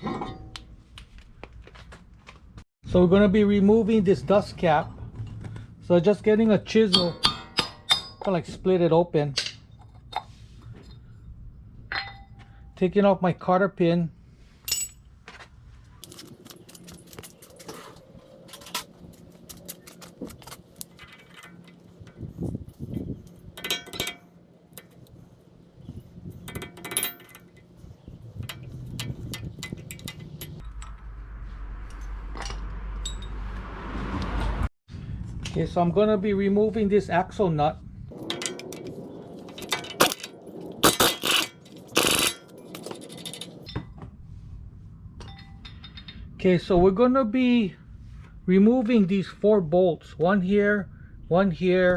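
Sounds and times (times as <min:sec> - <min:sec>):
metal tools clinking and scraping: 0:00.0 - 0:00.6, 0:14.6 - 0:15.0, 0:16.0 - 0:31.0, 0:38.1 - 0:43.9, 0:45.2 - 0:46.2
metal clicks of pliers: 0:28.4 - 0:30.9.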